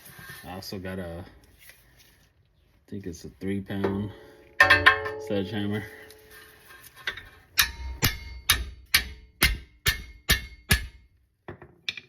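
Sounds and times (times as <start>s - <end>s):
sledgehammer striking metal wrench: 4.6s - 5.6s, 7.6s - 11.1s.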